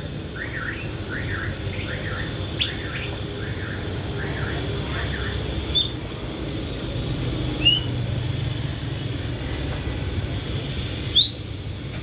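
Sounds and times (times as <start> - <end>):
bird chirping: 0.4 - 3.8.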